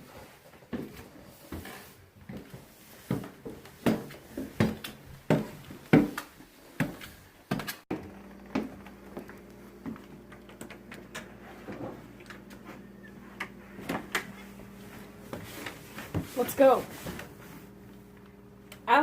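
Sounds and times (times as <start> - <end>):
steady low hum: 8.0 - 19.0.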